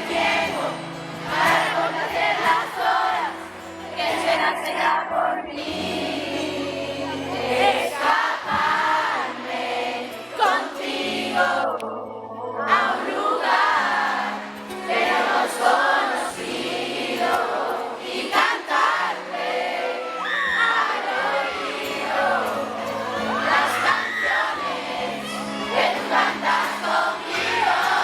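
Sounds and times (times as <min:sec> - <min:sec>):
pop song through sound system: 0:00.0 - 0:28.0.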